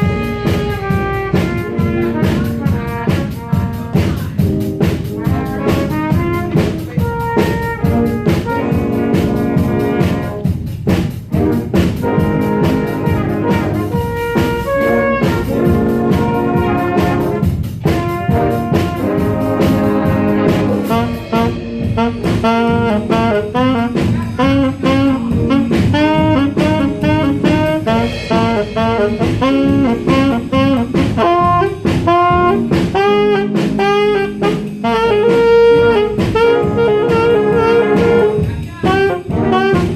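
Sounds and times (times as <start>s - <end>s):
brass backing: 0.0s - 39.9s
drum kit hits: 0.0s - 39.9s
horn soloing: 0.0s - 39.9s.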